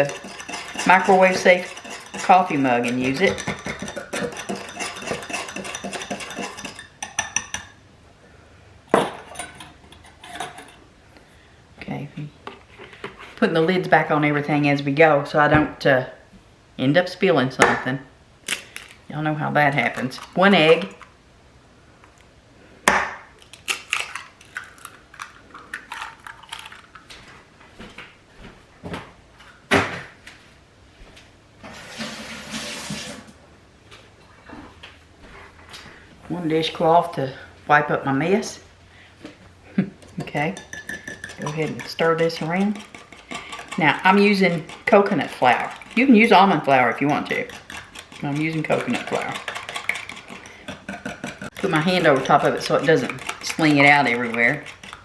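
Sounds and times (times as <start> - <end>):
dishes and utensils clinking: 0.0 - 7.8, 9.0 - 10.8, 40.1 - 44.8.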